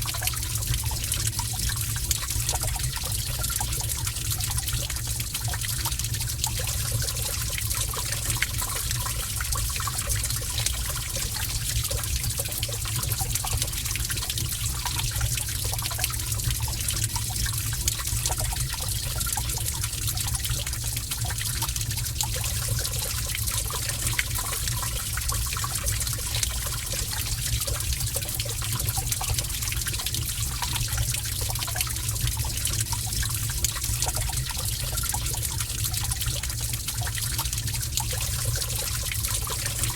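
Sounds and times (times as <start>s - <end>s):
water drips and splashes: 0.0s - 39.9s
water trickling: 0.0s - 39.9s.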